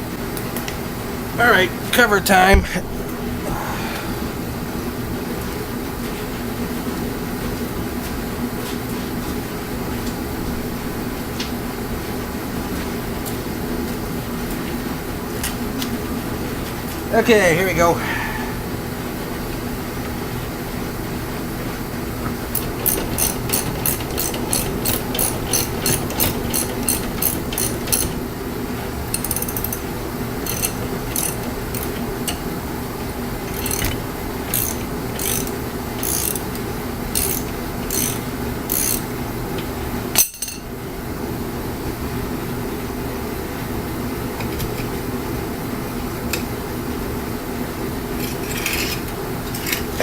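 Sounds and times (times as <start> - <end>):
steady hum: 0.0 - 50.0
ratchet wrench clicking: 22.6 - 28.2, 29.1 - 29.8, 30.4 - 32.4, 33.5 - 36.5, 37.1 - 39.1.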